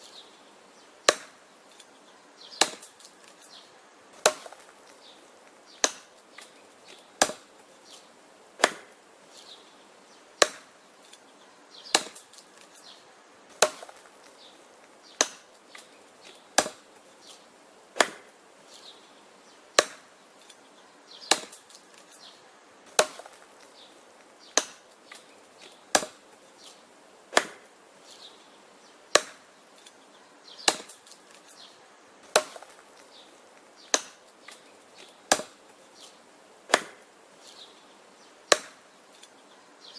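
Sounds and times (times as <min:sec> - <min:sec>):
axe chopping wood: 0:01.0 - 0:01.4, 0:02.5 - 0:03.4, 0:04.2 - 0:07.6, 0:08.6 - 0:09.0, 0:10.4 - 0:10.8, 0:11.9 - 0:17.4, 0:18.0 - 0:18.4, 0:19.8 - 0:20.2, 0:21.2 - 0:22.1, 0:22.9 - 0:26.3, 0:27.3 - 0:27.7, 0:29.1 - 0:29.5, 0:30.6 - 0:31.5, 0:32.2 - 0:37.1, 0:38.5 - 0:38.9
wood knocking and splintering: 0:13.6 - 0:14.3, 0:22.9 - 0:23.7, 0:24.6 - 0:26.2.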